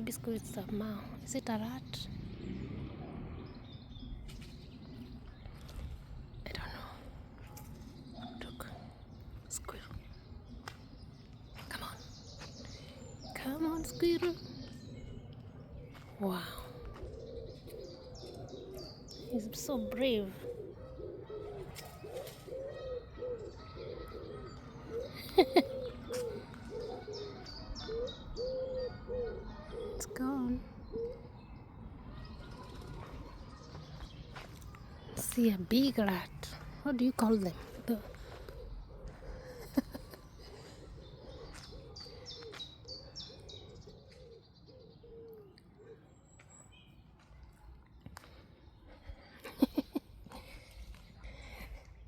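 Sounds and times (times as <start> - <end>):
small birds chirping faintly: 0.0 - 52.0
dove cooing: 13.3 - 33.9, 36.0 - 46.1.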